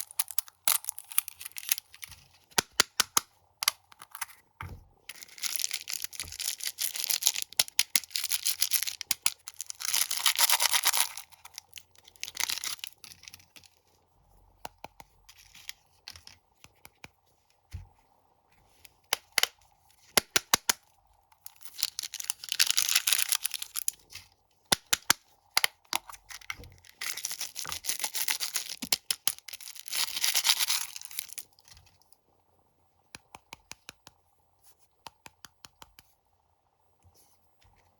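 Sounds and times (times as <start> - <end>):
crunching cheese snacks: 0.0 - 2.0, 5.1 - 13.5, 21.5 - 24.1, 26.8 - 31.6.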